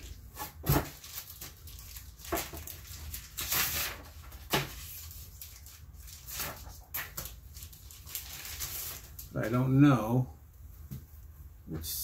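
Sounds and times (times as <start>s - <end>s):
packing material rustling: 0.0s - 9.6s.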